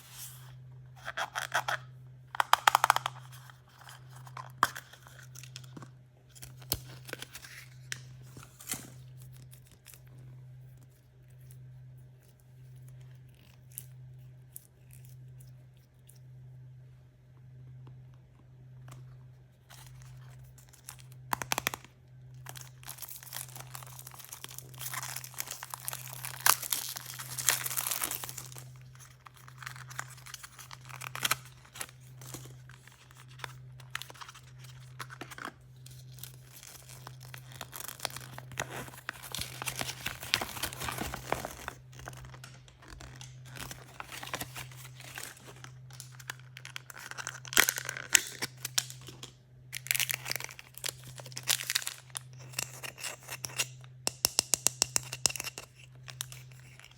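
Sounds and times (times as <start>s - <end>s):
steady low hum: 0.0s - 56.9s
packaging crinkled and torn open: 1.0s - 10.1s, 19.7s - 53.9s, 55.2s - 56.9s.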